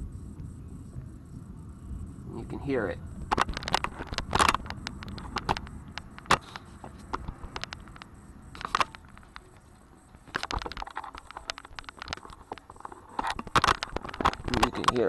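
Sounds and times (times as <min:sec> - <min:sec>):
wind rumbling on microphone: 0:00.0 - 0:15.0
raindrops tapping: 0:03.2 - 0:06.4.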